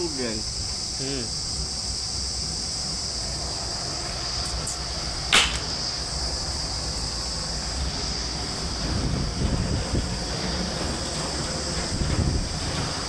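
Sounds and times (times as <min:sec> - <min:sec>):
crickets chirring: 0:00.0 - 0:13.0
sharp snap: 0:05.3 - 0:05.7.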